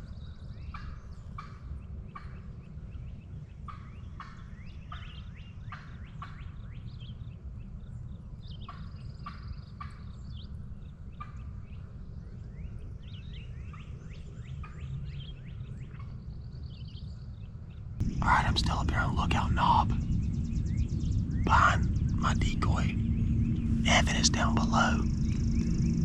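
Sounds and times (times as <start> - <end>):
songbirds chirping: 0.0 - 26.0
steady low rumble: 18.0 - 26.0.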